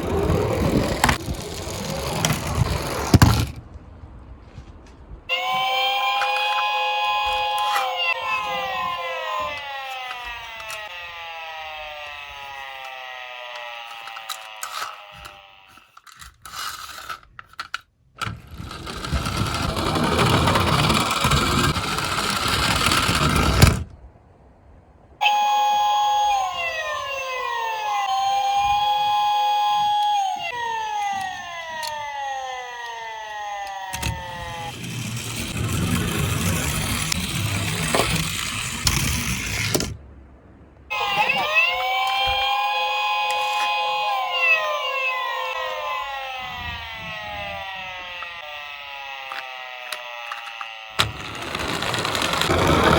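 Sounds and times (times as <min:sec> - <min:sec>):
toy car rolling: 0:00.0 - 0:03.6, 0:05.8 - 0:23.9, 0:27.2 - 0:40.0, 0:40.9 - 0:52.9
toy electronic siren wailing: 0:05.3 - 0:16.3, 0:18.6 - 0:23.4, 0:25.2 - 0:39.6, 0:40.9 - 0:52.9
clicks: 0:05.4 - 0:21.8, 0:27.8 - 0:35.6, 0:40.9 - 0:52.9.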